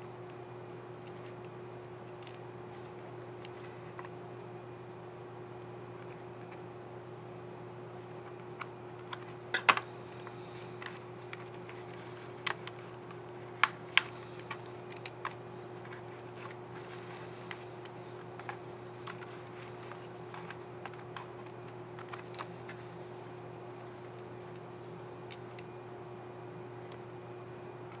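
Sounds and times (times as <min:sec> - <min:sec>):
low electrical hum: 0:00.0 - 0:28.0.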